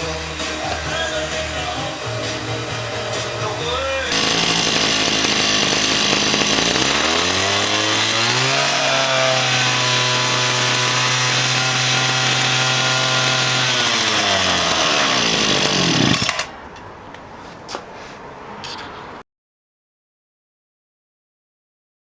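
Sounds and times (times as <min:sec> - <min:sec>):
small pump engine running: 0:04.1 - 0:16.4.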